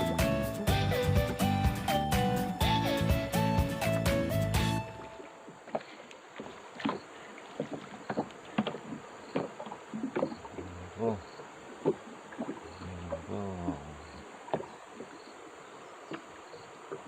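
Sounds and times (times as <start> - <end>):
insects droning: 4.7 - 17.0.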